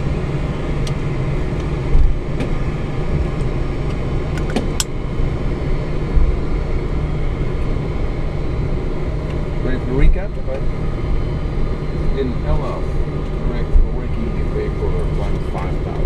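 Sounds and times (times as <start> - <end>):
aircraft engines rumble and hiss: 0.0 - 16.0
low thumps: 1.6 - 12.0.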